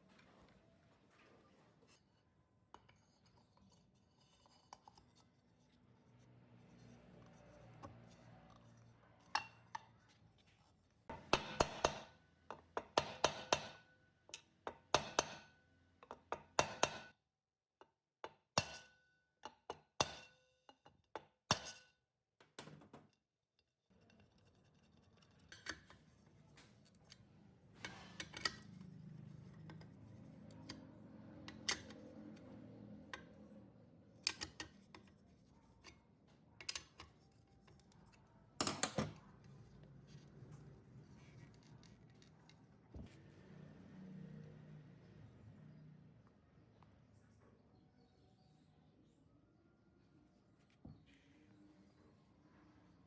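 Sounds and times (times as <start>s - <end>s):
soft handling and rustling: 0.0s - 11.1s, 34.8s - 43.7s.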